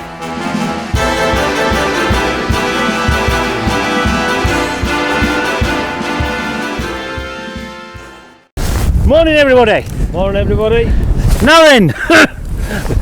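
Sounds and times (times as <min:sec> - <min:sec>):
music with beat and brass: 0:00.0 - 0:08.5.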